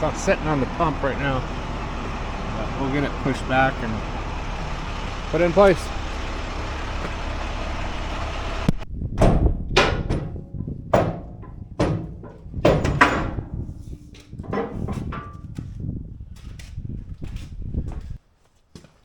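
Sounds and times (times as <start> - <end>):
steady running noise: 0.0 - 18.2
metal clanks and knocks: 9.1 - 15.7.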